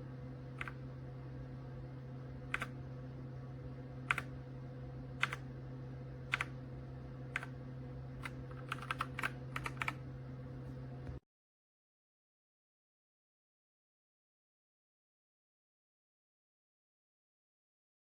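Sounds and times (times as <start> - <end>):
steady low hum: 0.0 - 11.2.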